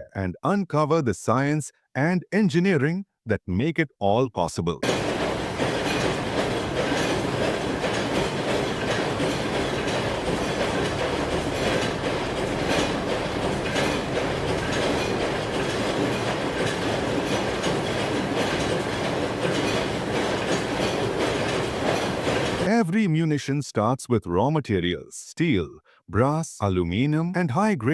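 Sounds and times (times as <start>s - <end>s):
mechanical clatter and rumble: 4.8s - 22.6s
small irregular clicks and rattles: 4.8s - 22.6s.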